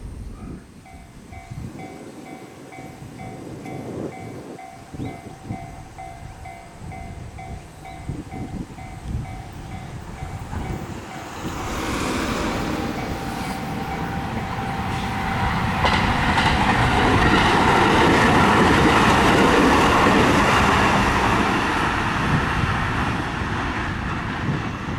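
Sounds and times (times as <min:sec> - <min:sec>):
level crossing warning bell: 0:00.8 - 0:21.1
train rushing past: 0:00.8 - 0:24.9.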